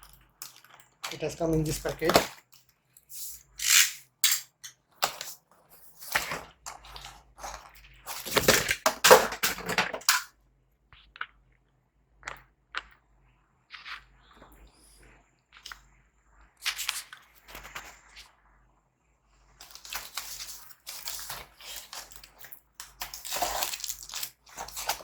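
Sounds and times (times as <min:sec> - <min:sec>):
packaging crinkling and rustling: 0:00.0 - 0:04.0, 0:05.0 - 0:10.3, 0:19.6 - 0:25.0.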